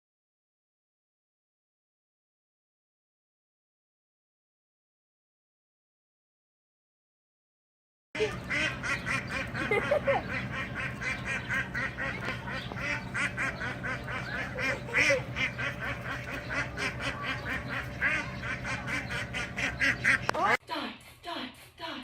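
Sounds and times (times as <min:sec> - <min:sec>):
ducks quacking: 0:08.2 - 0:20.6.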